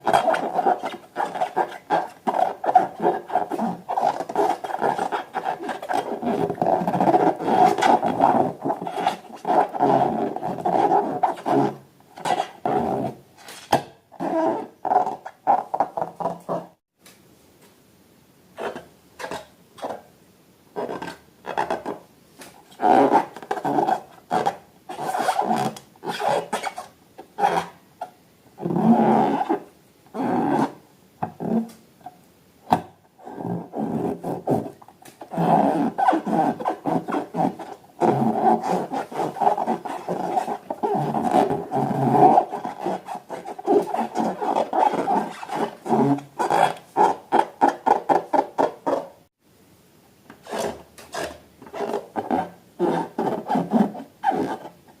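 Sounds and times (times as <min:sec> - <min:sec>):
balloons squeaking: 0:00.0 - 0:16.6, 0:33.2 - 0:49.1, 0:50.4 - 0:54.7.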